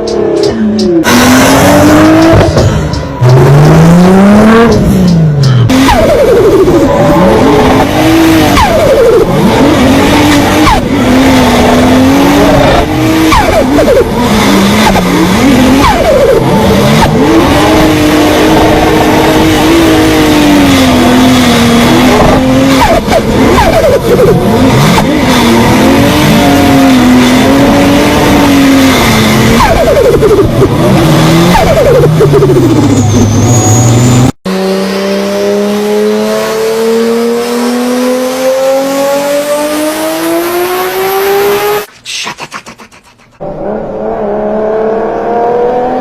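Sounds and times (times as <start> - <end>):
car engine revving: 0.0 - 41.9, 43.4 - 46.0.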